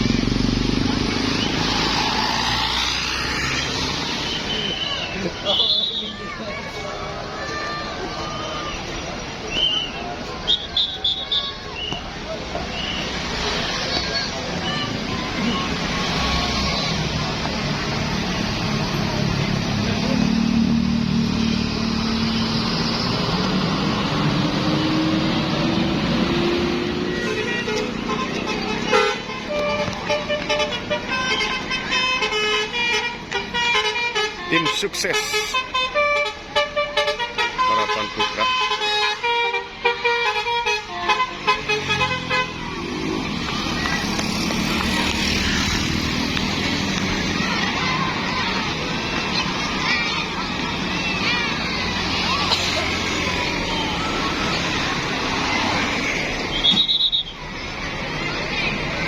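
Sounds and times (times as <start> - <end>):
bus engine revving: 0.0 - 4.7, 12.8 - 31.9
bus engine running: 0.0 - 5.4, 11.7 - 37.6, 39.0 - 59.0
traffic noise: 0.0 - 59.0
bus horn melodic toots: 27.1 - 42.6.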